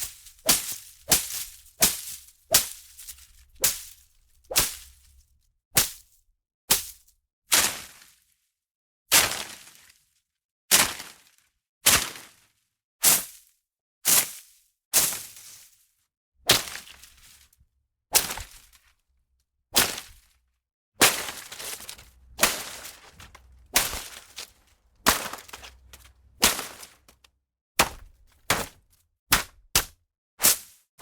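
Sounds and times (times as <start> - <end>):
rustle of leaves: 0.0 - 4.0, 21.1 - 27.0
sharp hits into leafy plants: 0.0 - 4.9, 21.0 - 27.2, 27.8 - 29.9.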